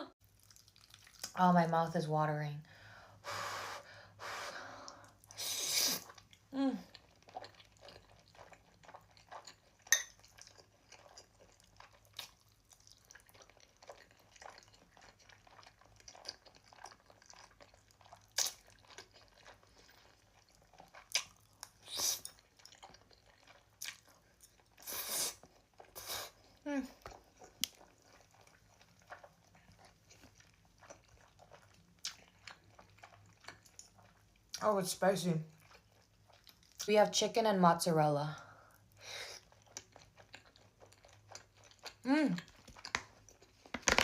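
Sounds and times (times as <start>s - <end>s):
soft wet chewing: 0.2s - 1.5s, 4.1s - 36.9s, 38.4s - 44.0s
slurping noodles: 4.7s - 6.2s, 24.8s - 26.4s.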